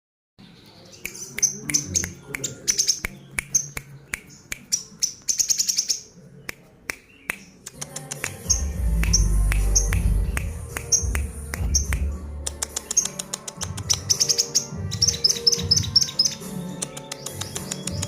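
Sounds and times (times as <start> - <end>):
sunbird singing high chips: 10.8 - 18.0.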